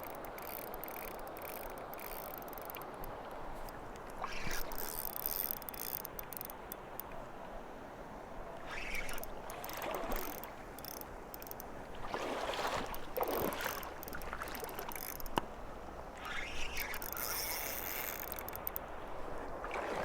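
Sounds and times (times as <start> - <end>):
river water running: 0.0 - 20.0
water splashing: 8.7 - 15.4, 19.4 - 20.0.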